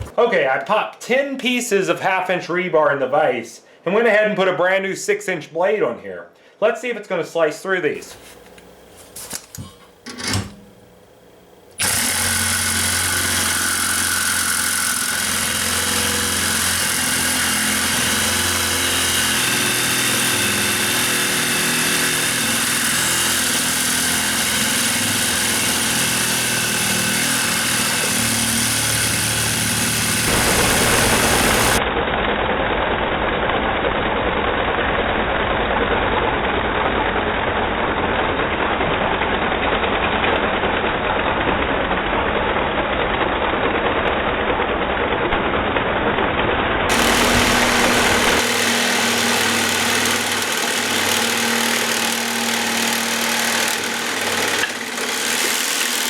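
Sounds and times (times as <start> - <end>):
reciprocating saw cutting steel: 11.8 - 31.8, 46.9 - 56.0.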